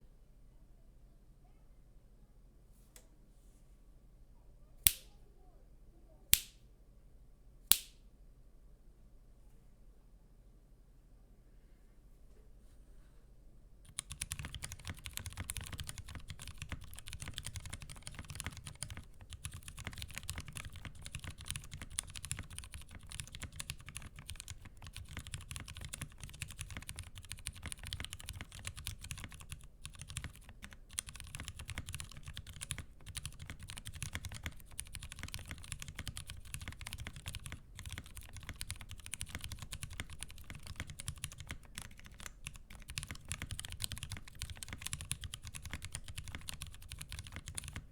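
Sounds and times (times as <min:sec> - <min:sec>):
mechanical keyboard typing: 0:13.9 - 0:47.9.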